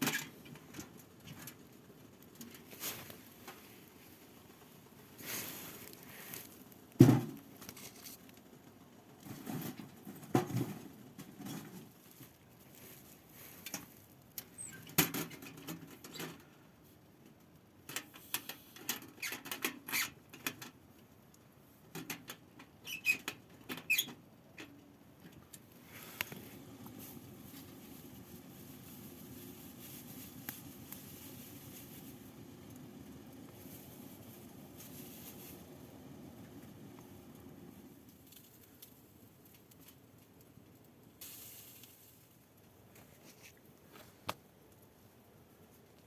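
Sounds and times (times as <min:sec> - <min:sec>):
knocks and scrapes of handling: 0:02.4 - 0:08.5, 0:09.1 - 0:16.5.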